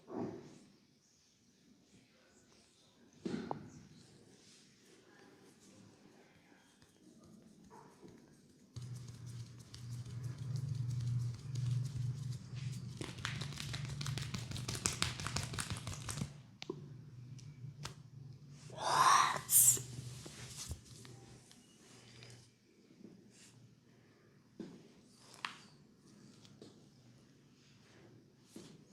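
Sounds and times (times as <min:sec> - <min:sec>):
hands rubbing hair: 0:07.2 - 0:16.4
low hum: 0:08.8 - 0:15.5.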